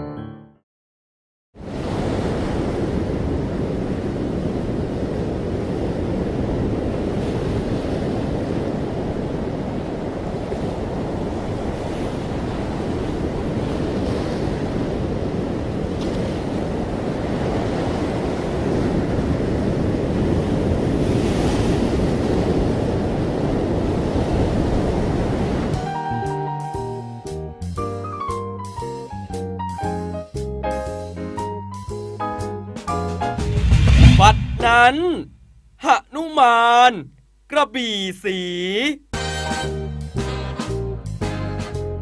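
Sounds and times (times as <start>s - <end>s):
deep rushing noise: 33.4s - 35.6s.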